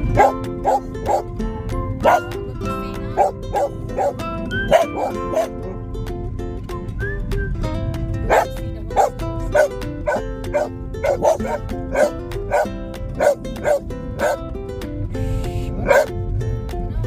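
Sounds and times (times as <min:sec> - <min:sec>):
background music: 0:00.0 - 0:17.0
dog barking: 0:00.1 - 0:01.3, 0:02.0 - 0:02.4, 0:03.2 - 0:05.8, 0:08.3 - 0:14.4, 0:15.8 - 0:16.1.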